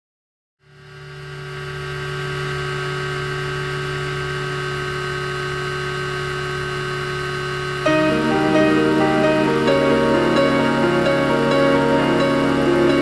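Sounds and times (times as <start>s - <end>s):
model helicopter motor and rotor hum: 0.6s - 7.9s.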